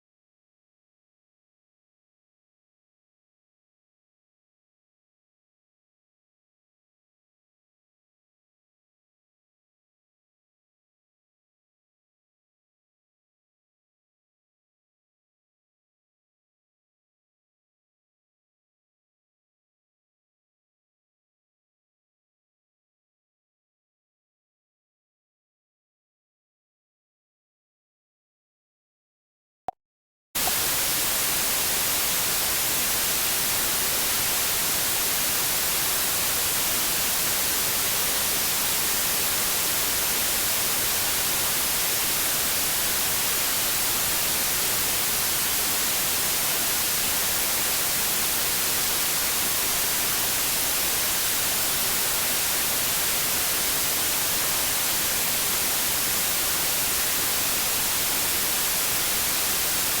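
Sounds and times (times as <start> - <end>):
static hiss: 30.4 - 60.0.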